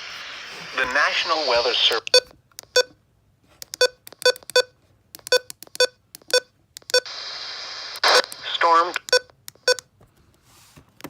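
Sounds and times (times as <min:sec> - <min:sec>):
radio static: 0:00.0 - 0:02.1, 0:07.1 - 0:09.1.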